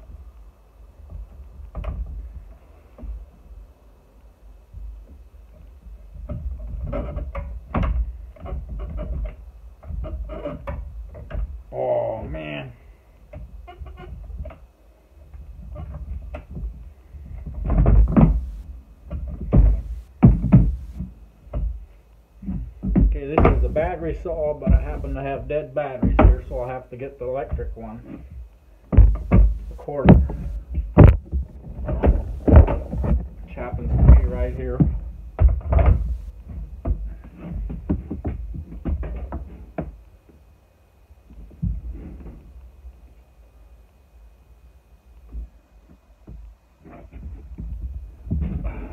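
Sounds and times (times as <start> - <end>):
hard objects knocking and clattering: 15.3 - 21.8, 22.4 - 26.6, 27.4 - 40.0.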